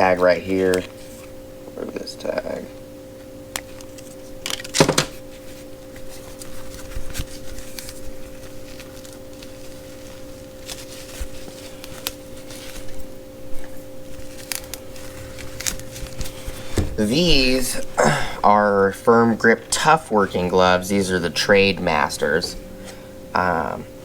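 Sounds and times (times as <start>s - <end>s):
steady hum: 0.0s - 24.0s
packaging rustling and clicking: 3.6s - 17.9s.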